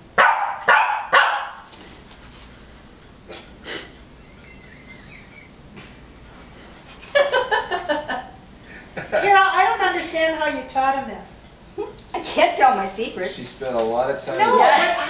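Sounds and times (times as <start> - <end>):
dog barking: 0.2 - 1.6.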